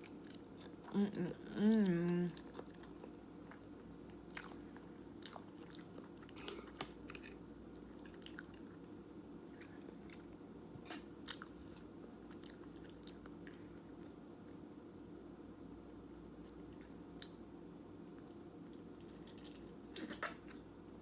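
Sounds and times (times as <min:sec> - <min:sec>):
steady low hum: 0:00.0 - 0:21.0
chewing noodles: 0:01.8 - 0:08.9.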